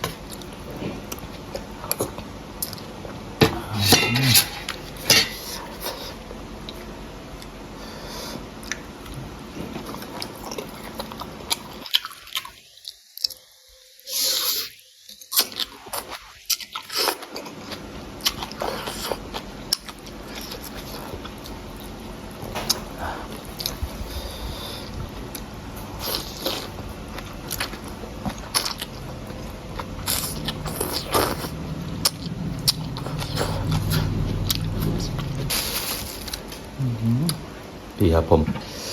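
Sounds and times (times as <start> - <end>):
chewing and crunching food: 0.0 - 7.6, 8.3 - 36.7.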